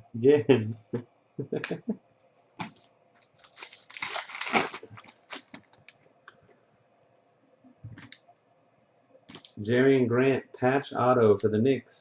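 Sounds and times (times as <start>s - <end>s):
wrapper crinkling and tearing: 2.6s - 5.8s.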